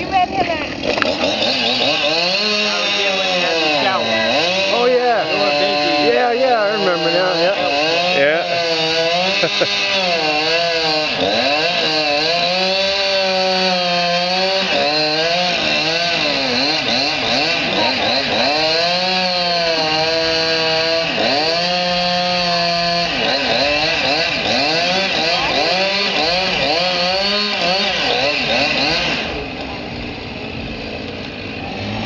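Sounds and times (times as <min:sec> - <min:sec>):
chainsaw cutting tree: 0:00.0 - 0:32.0.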